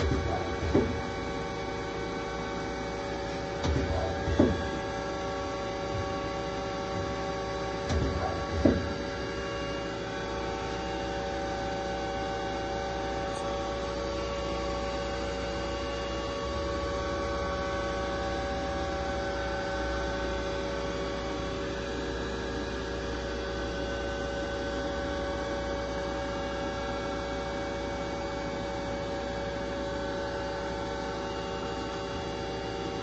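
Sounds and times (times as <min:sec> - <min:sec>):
clunk with sharp click: 0:00.0 - 0:01.1, 0:03.6 - 0:04.9, 0:07.8 - 0:09.0
lathe electrical hum: 0:00.0 - 0:33.0.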